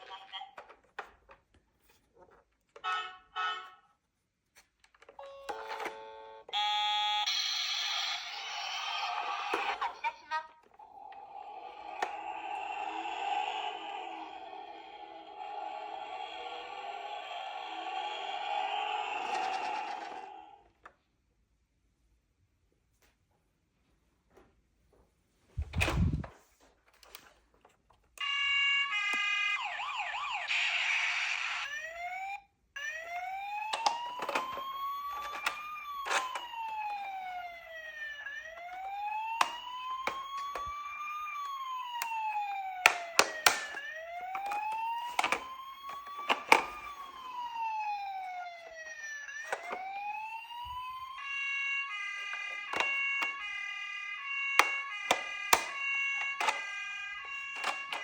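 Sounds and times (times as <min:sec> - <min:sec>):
toy electronic siren: 0:05.2 - 0:20.7, 0:28.2 - 0:58.0.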